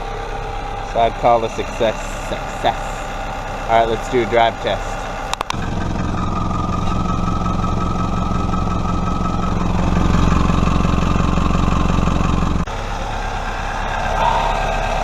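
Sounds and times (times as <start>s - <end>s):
car engine running: 0.0s - 15.0s.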